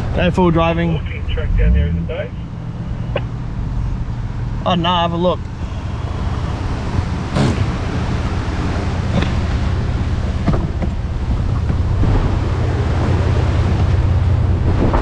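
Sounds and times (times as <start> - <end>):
wind buffeting microphone: 5.4 - 15.0.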